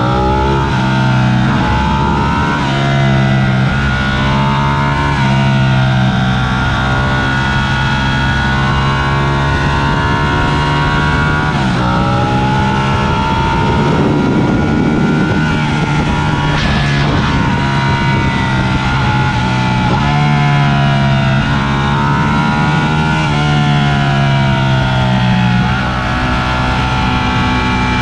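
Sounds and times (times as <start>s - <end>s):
motorcycle engine running: 0.0s - 28.0s
wind rush: 8.4s - 22.8s.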